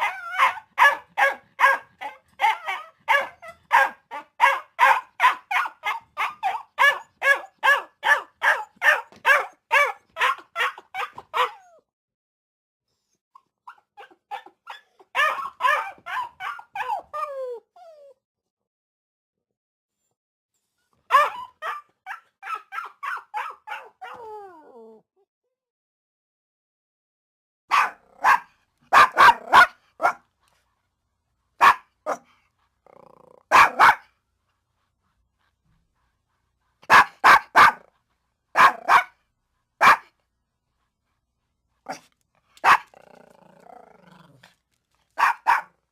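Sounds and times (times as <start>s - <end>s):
dog barking rapidly: 0.0s - 11.6s, 14.0s - 17.0s, 21.1s - 24.2s, 27.7s - 30.2s, 31.6s - 32.2s, 33.5s - 34.1s, 36.9s - 37.9s, 38.5s - 39.2s, 39.8s - 40.1s, 42.6s - 43.0s, 45.2s - 45.8s
dog growling: 32.8s - 33.5s, 42.8s - 44.7s.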